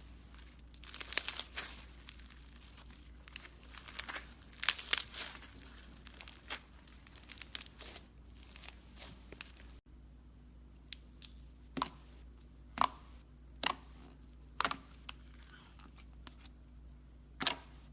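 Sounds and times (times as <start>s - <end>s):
slime crackling and popping: 0.4s - 9.8s.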